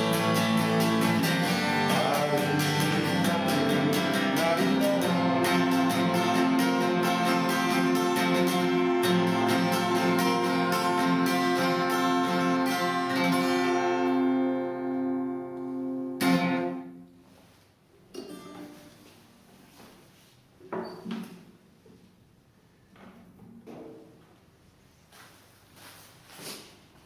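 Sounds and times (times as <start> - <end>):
guitar strumming chords: 0.0 - 17.1.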